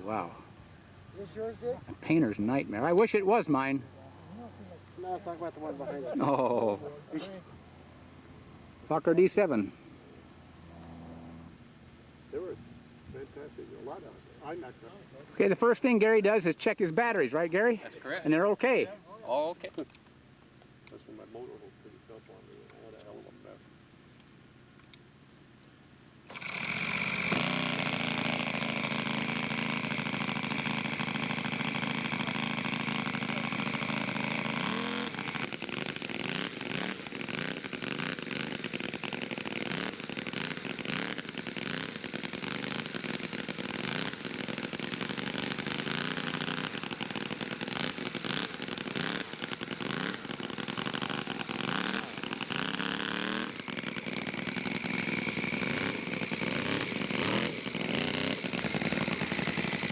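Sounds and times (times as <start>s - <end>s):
model aircraft engine running: 8.6s - 18.7s, 26.2s - 59.9s.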